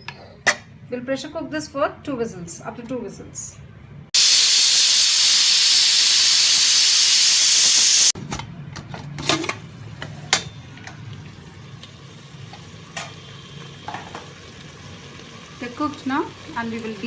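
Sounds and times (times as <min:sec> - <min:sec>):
pressure cooker whistle hissing: 0:04.2 - 0:08.2.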